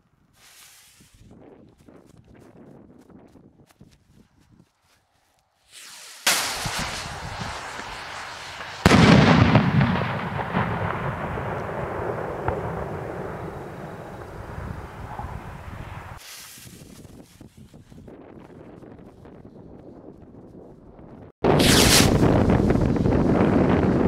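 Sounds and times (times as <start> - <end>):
rocket launch whoosh: 5.7 - 16.7, 21.4 - 23.2
firework bang: 5.8 - 16.0, 21.4 - 22.7
rolling echo: 6.3 - 16.2.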